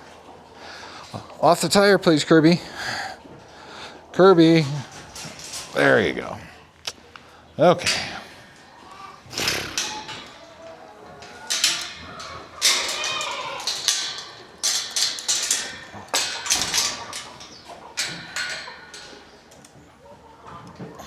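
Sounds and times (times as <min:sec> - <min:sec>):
goats knocking and clattering: 0:09.2 - 0:21.0
goat bleating: 0:12.8 - 0:13.6.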